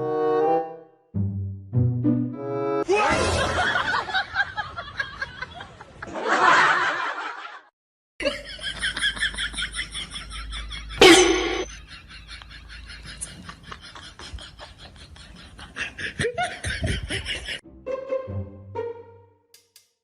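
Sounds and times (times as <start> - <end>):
people laughing: 2.9 - 17.6.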